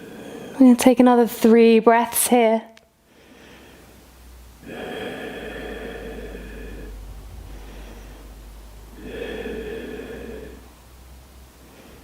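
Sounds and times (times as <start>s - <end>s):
person breathing deeply: 0.0s - 0.6s, 3.0s - 4.0s, 4.6s - 10.9s, 11.5s - 12.0s.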